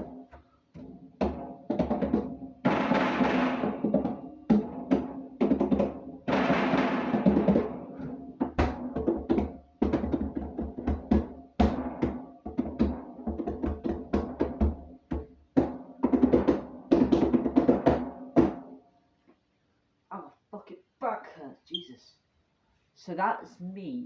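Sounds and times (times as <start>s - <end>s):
drumming on a mini fridge: 0.0s - 18.6s.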